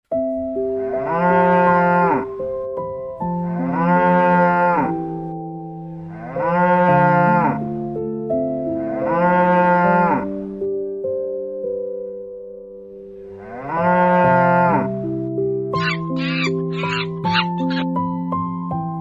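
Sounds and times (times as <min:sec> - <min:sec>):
background music with held notes: 0:00.1 - 0:19.0
cow mooing: 0:00.8 - 0:02.3, 0:03.5 - 0:05.0, 0:06.1 - 0:07.6, 0:08.8 - 0:10.3, 0:13.4 - 0:14.9, 0:15.8 - 0:17.8.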